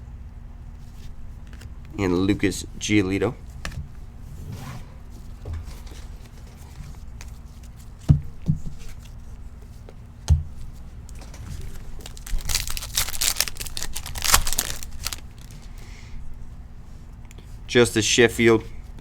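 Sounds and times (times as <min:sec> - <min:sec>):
foil wrapper tearing and crinkling: 0:12.0 - 0:15.7.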